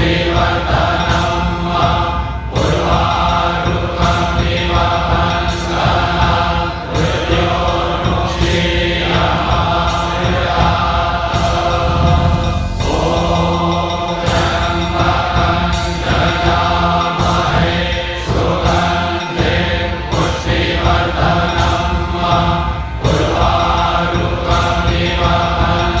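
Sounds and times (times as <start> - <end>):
voices chanting: 0.0 - 26.0
steady low drone: 6.8 - 24.8.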